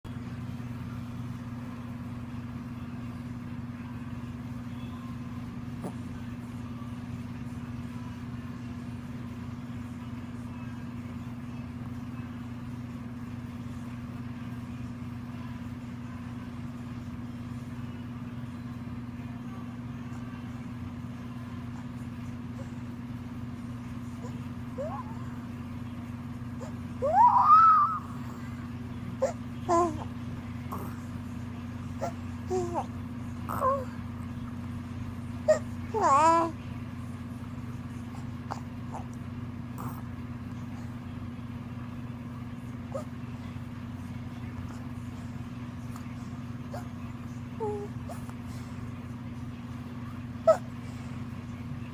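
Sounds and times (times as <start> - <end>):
steady low hum: 0.1 - 51.9.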